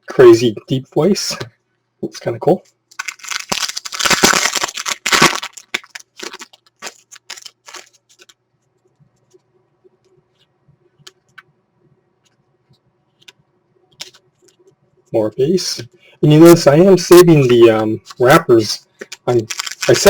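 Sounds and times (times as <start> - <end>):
wrapper tearing and crinkling: 2.9 - 8.3, 19.3 - 20.0.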